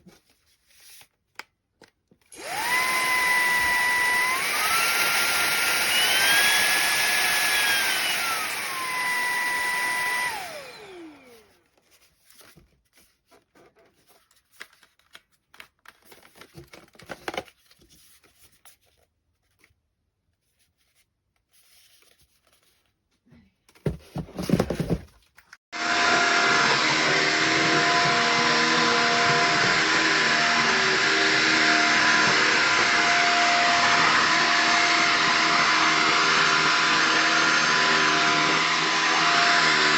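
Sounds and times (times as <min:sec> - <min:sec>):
stick vacuum motor whine: 0:02.3 - 0:11.5, 0:25.8 - 0:39.9.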